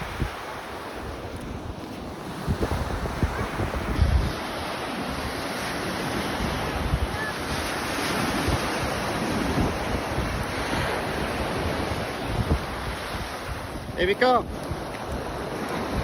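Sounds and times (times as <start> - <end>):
ocean surf washing ashore: 0.0 - 16.0
wind buffeting microphone: 0.0 - 16.0.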